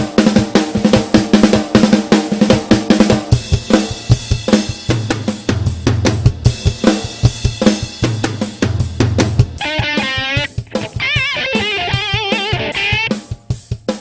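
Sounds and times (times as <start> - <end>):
drum kit beat: 0.0 - 14.0
bass line: 9.4 - 13.2.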